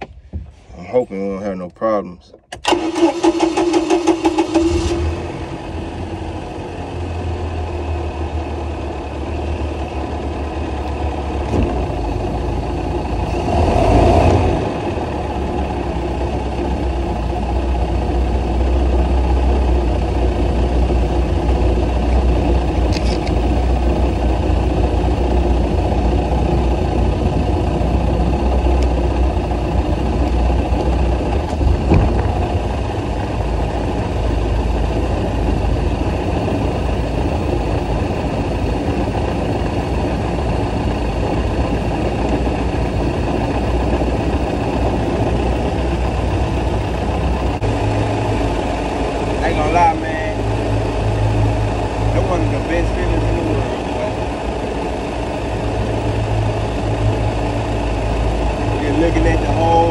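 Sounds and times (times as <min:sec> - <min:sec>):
boat motor rumbling: 0:03.6 - 0:59.9.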